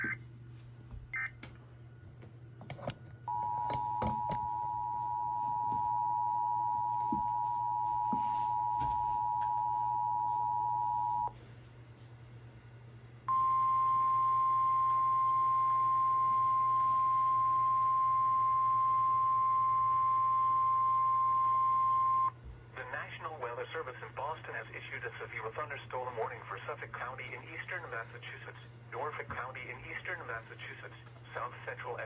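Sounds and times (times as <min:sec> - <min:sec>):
low hum: 0:02.6 - 0:22.4
single-tone warning alarm: 0:03.3 - 0:11.3, 0:13.3 - 0:22.3
two-tone attention signal: 0:13.3 - 0:22.3.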